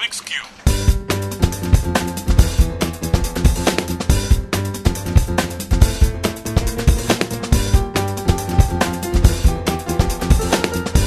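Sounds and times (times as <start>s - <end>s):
music with drum beat and bass: 0.6s - 11.0s.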